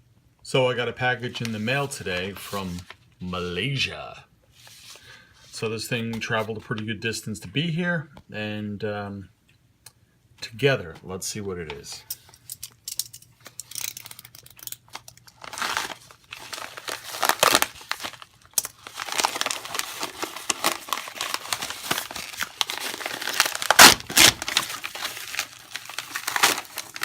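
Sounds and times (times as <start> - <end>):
packaging being torn and crumpled: 13.9 - 27.0
sharp paper rips: 15.4 - 27.0.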